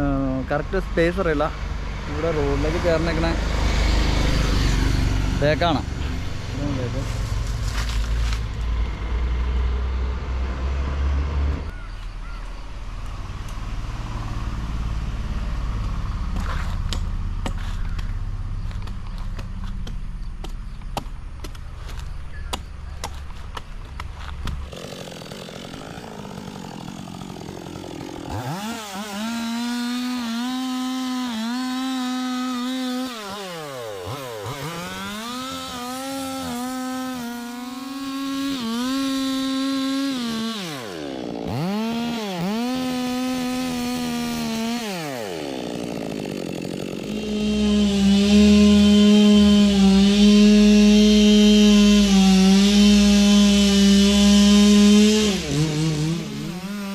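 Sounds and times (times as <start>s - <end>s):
chainsaw revving: 2.0s - 11.7s, 24.6s - 56.9s
chainsaw cutting wood: 2.1s - 9.8s, 15.9s - 56.9s.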